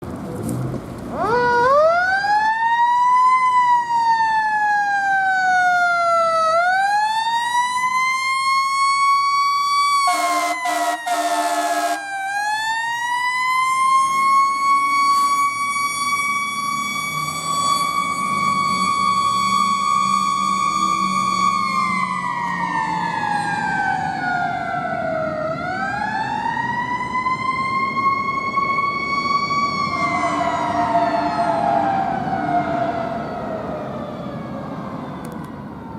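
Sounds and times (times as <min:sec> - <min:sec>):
fire engine siren wailing: 0:01.0 - 0:35.9
horn blasts: 0:10.1 - 0:12.1.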